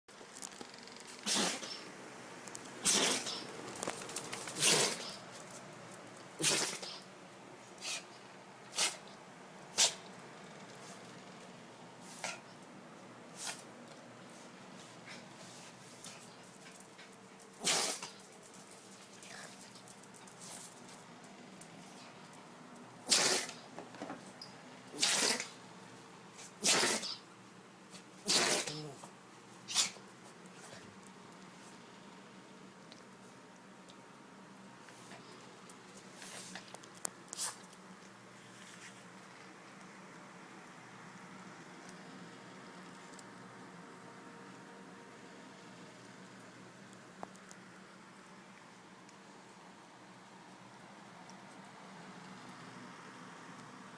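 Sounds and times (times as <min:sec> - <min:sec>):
dog sneezing: 0:01.2 - 0:01.9, 0:02.8 - 0:03.5, 0:04.5 - 0:05.2, 0:06.4 - 0:07.1, 0:07.8 - 0:09.1, 0:09.7 - 0:10.1, 0:12.0 - 0:12.4, 0:13.4 - 0:13.7, 0:17.6 - 0:18.2, 0:23.0 - 0:23.6, 0:24.9 - 0:25.6, 0:26.4 - 0:27.2, 0:28.2 - 0:29.1, 0:29.7 - 0:30.0, 0:37.4 - 0:37.6.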